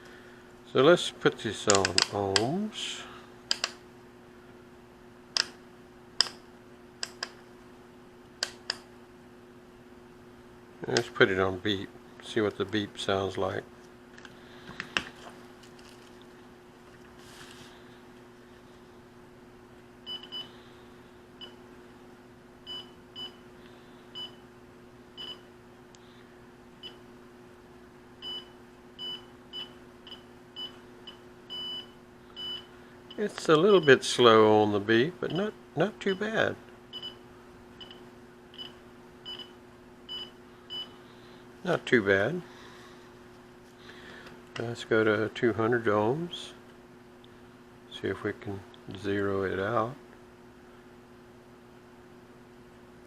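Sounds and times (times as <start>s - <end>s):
sharp plastic clicks: 1.7s - 2.5s, 3.5s - 3.8s
multimeter beeps: 20.1s - 20.5s, 24.2s - 24.4s, 25.2s - 25.4s, 28.2s - 34.0s, 38.6s - 41.0s.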